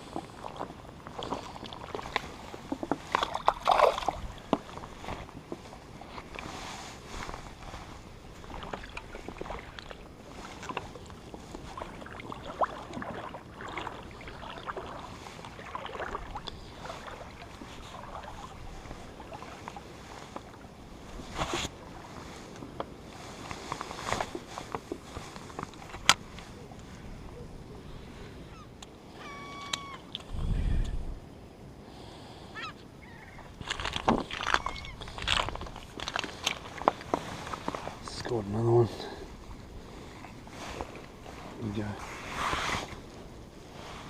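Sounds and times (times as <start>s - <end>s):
water lapping and sloshing: 0.0s - 30.5s, 31.2s - 44.0s.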